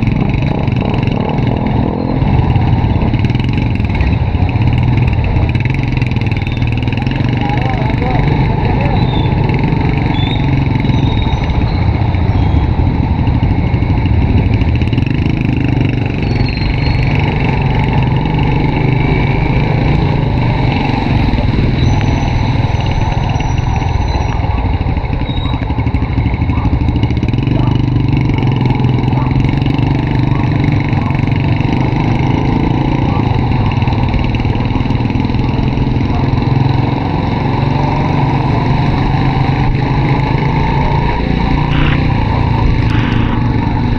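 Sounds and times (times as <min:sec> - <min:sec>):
motorcycle engine running: 0:00.0 - 0:43.9
road noise: 0:00.0 - 0:43.9.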